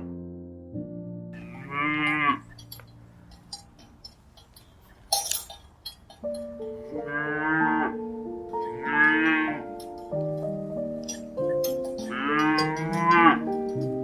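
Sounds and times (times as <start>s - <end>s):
background music: 0.0s - 14.0s
cow mooing: 1.4s - 2.6s, 7.0s - 9.9s, 11.9s - 13.7s.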